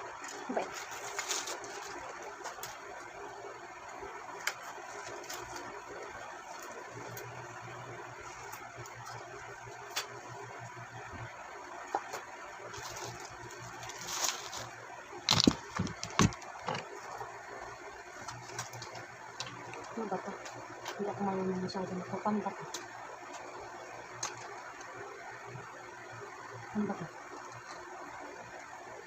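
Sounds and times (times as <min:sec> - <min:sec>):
packaging clicks and crackles: 0:12.0 - 0:17.0, 0:22.7 - 0:24.9
rustling and knocks: 0:15.3 - 0:16.9.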